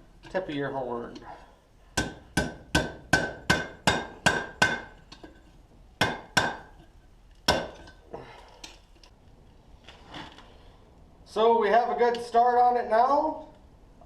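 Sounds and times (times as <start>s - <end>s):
hammer striking metal on anvil: 2.0s - 5.3s, 6.0s - 6.8s, 7.5s - 8.0s.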